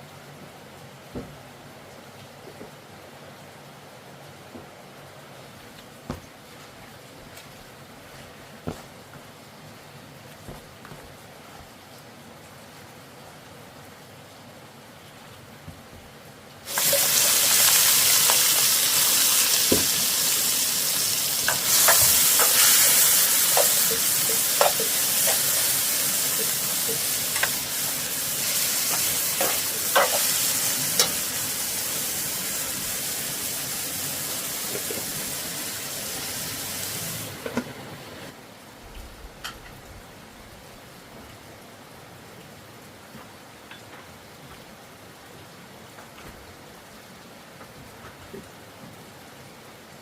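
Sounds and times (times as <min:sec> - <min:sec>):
food sizzling in hot oil: 0:16.6 - 0:37.5.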